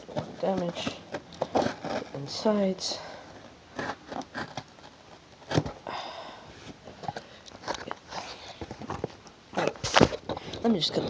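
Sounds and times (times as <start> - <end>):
cardboard package being handled: 0.0 - 2.6, 6.6 - 11.0
cardboard scraping: 0.0 - 2.7, 3.3 - 5.8, 6.6 - 11.0.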